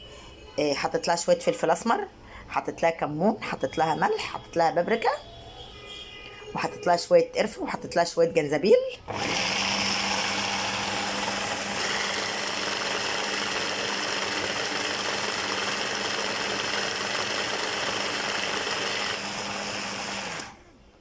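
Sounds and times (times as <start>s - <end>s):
food processor motor humming: 9.0s - 20.8s.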